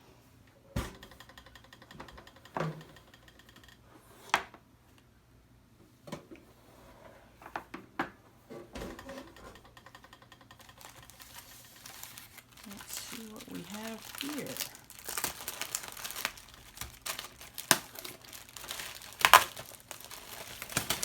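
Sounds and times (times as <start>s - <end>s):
parts and packaging clattering: 8.7s - 21.0s
packaging rustling: 10.6s - 21.0s.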